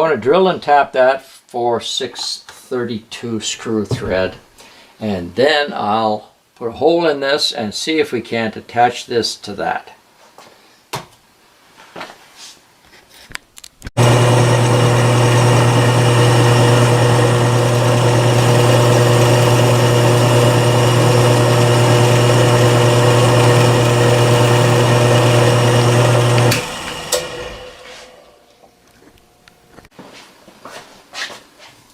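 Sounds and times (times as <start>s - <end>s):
electric motor humming while drilling: 14.0s - 28.2s.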